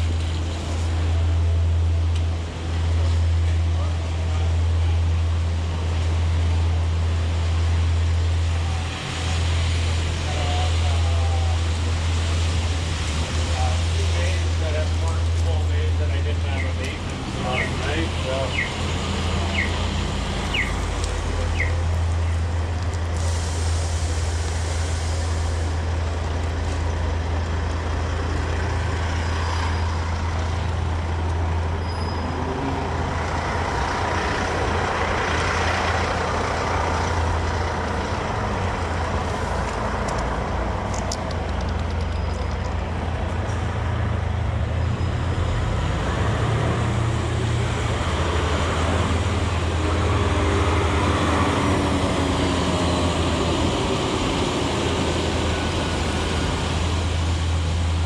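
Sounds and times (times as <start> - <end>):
traffic engine rumble: 0.0 - 58.0
heavy rain hissing: 5.9 - 30.8, 46.5 - 58.0.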